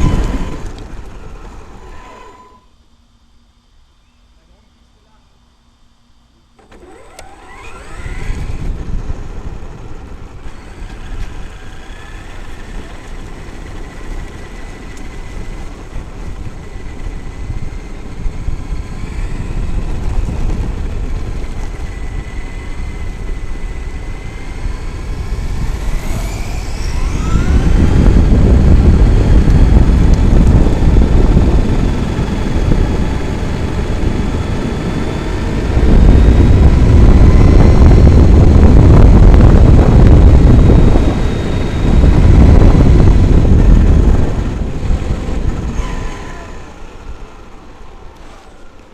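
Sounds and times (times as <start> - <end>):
electric motor whining: 0.0 - 2.8, 6.5 - 48.9
heavy low rumbling: 23.1 - 47.8.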